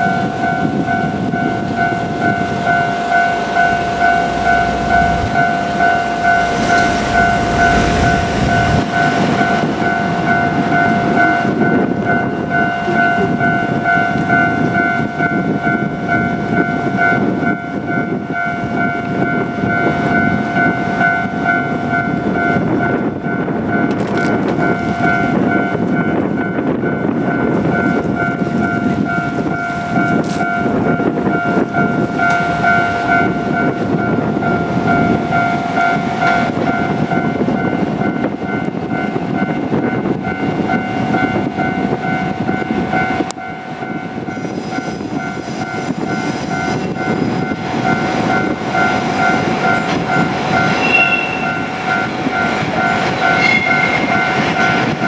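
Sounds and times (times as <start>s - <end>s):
diesel railcar rumbling past: 0.0s - 55.0s
level crossing warning bell: 0.0s - 55.0s.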